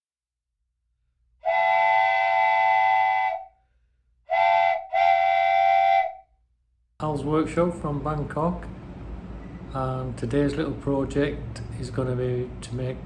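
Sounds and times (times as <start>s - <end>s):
steam whistle blowing: 1.4s - 3.6s, 4.3s - 6.3s.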